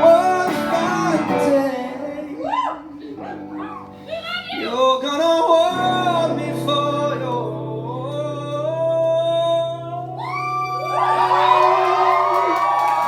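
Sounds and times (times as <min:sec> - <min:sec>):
man singing: 0:00.0 - 0:03.8, 0:04.4 - 0:10.2
acoustic guitar: 0:00.0 - 0:11.4.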